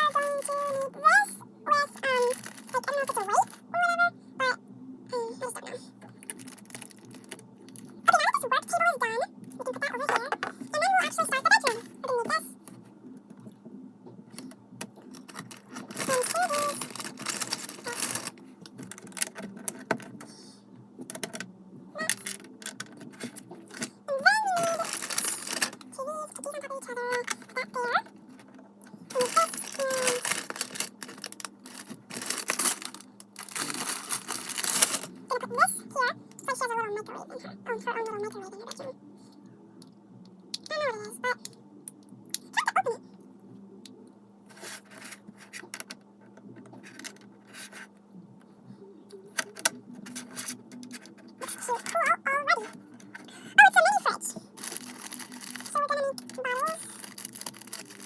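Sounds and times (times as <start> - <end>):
plastic bricks rubbing together: 14.9 - 20.0, 22.1 - 25.9, 29.1 - 35.1, 54.6 - 58.0.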